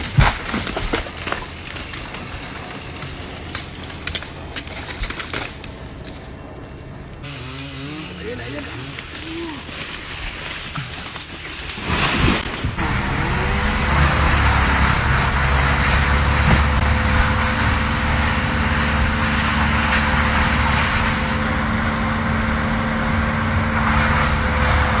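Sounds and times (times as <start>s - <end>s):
engine running steadily: 12.7s - 25.0s.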